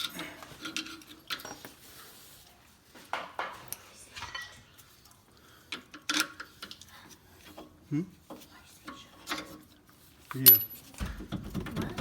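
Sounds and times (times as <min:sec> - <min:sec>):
metal tools clinking: 0:00.0 - 0:01.8, 0:10.3 - 0:11.1.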